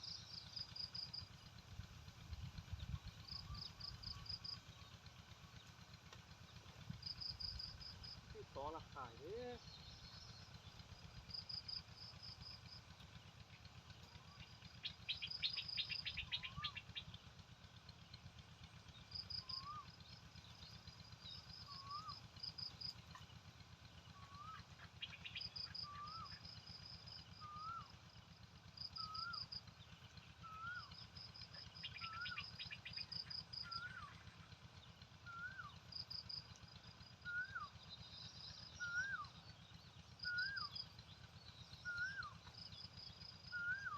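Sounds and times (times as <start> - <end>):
bird rapid chattering: 14.8 - 17.1.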